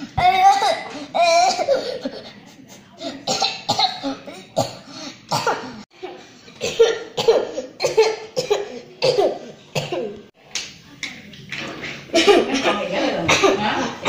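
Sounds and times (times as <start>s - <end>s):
person coughing: 6.6s - 10.2s.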